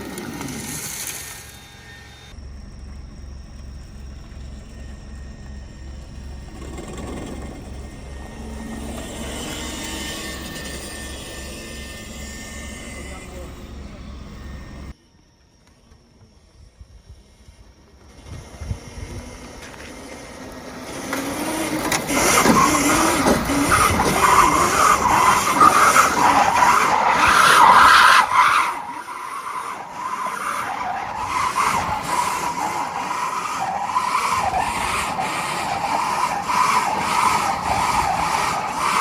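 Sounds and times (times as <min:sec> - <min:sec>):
tyres squealing on pavement: 0:00.0 - 0:14.9, 0:19.6 - 0:39.0.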